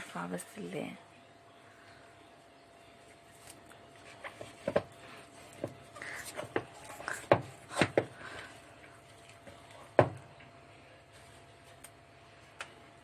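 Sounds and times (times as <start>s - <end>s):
bread dough kneaded in a bowl: 2.9s - 13.0s.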